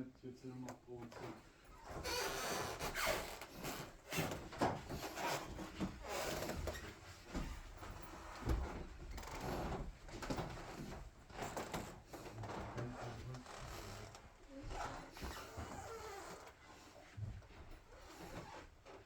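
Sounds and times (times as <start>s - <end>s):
wooden floorboards creaking: 1.8s - 6.9s, 12.7s - 16.6s
footsteps on wooden floor: 1.9s - 19.0s.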